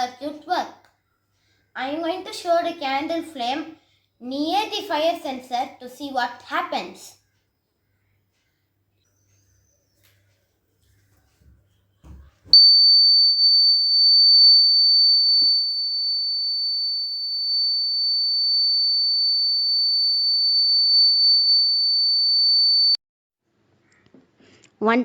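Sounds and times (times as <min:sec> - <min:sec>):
buzzer high-pitched tone: 0:12.6 - 0:23.0.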